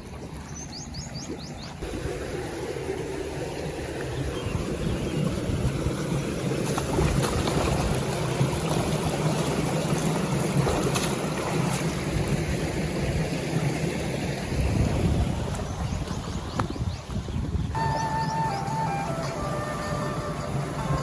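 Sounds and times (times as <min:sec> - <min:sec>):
wind buffeting microphone: 0:04.2 - 0:13.5, 0:14.3 - 0:21.0.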